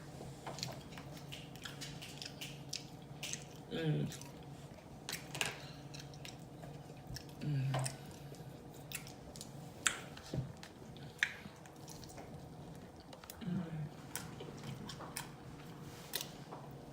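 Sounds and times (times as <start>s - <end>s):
close chewing: 0.5s - 13.4s.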